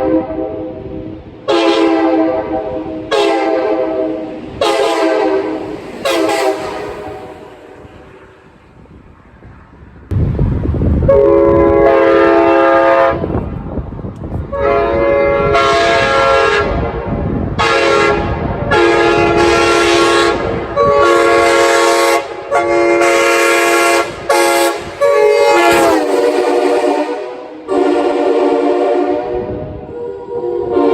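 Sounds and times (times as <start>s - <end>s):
train horn blasts: 0.0s - 8.4s, 11.0s - 13.5s, 14.5s - 30.9s
low rumble: 5.8s - 12.0s.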